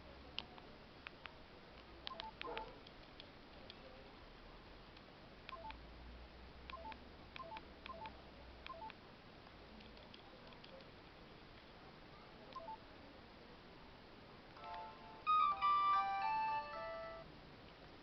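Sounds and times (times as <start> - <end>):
phone keypad button clicks: 2.1 - 2.5.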